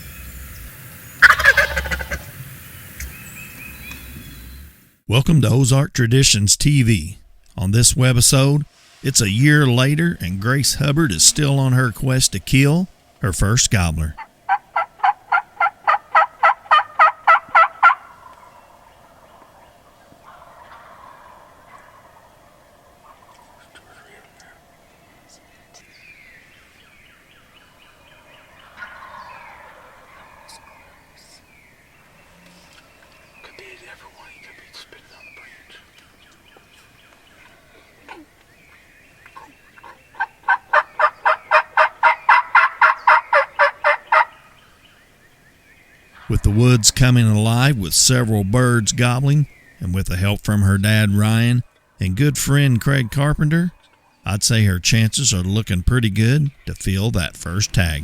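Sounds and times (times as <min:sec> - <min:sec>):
turkey yelping: 0:01.2 - 0:02.3, 0:14.2 - 0:24.4, 0:28.2 - 0:31.1, 0:39.3 - 0:44.6.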